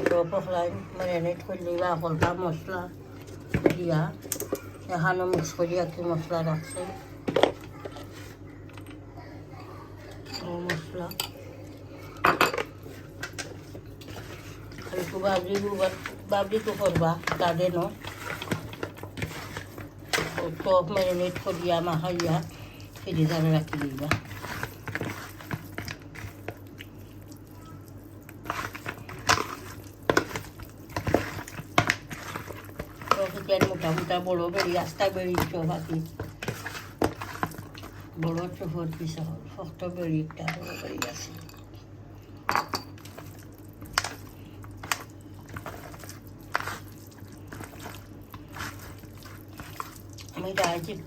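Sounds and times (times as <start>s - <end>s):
low steady hum: 0.0s - 51.0s
wet squishing of chicken mixed by hand: 12.8s - 39.1s, 43.0s - 51.0s.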